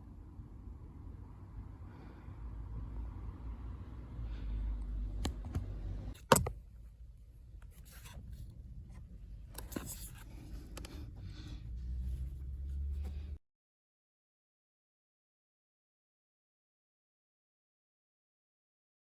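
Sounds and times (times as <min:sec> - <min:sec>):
low steady rumble: 0:00.0 - 0:13.4
rubbing and scraping: 0:09.6 - 0:13.4.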